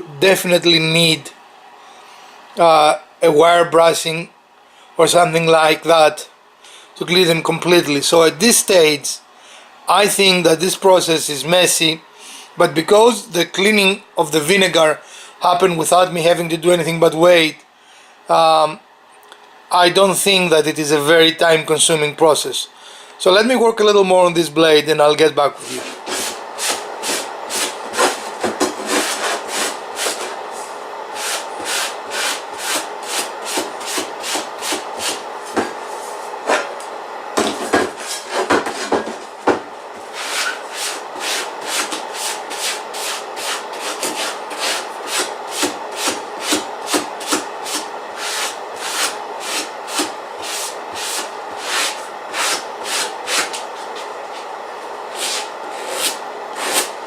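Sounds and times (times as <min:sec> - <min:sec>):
brush scrubbing a saw blade: 0:40.1 - 0:53.6.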